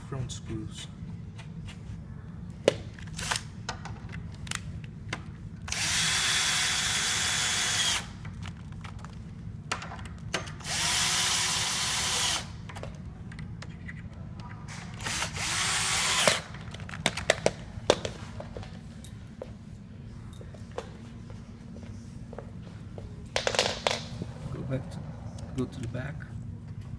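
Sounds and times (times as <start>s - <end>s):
cordless drill driving screws: 10.6s - 12.5s.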